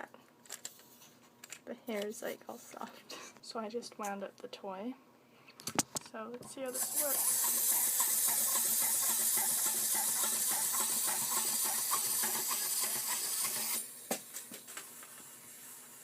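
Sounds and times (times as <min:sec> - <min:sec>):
clockwork toy whirring and ticking: 0:06.7 - 0:13.9.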